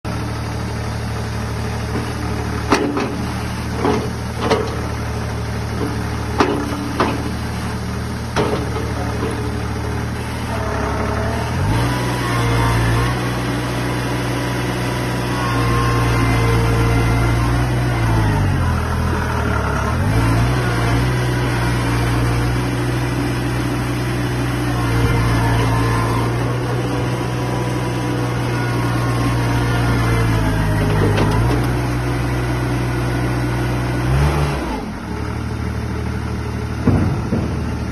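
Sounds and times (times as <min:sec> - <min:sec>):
skid steer loader engine running: 0:00.0 - 0:37.9
knocks: 0:36.8 - 0:37.9.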